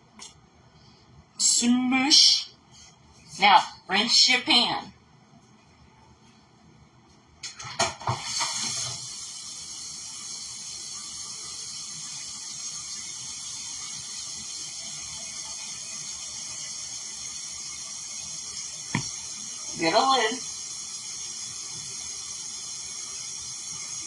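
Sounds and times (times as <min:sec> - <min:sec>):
kitchen tap running: 0:08.1 - 0:24.0.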